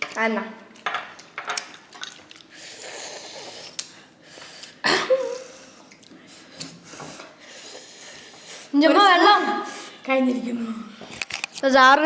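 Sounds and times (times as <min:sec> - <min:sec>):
person breathing hard and hissing: 0:02.6 - 0:04.8, 0:05.4 - 0:08.8.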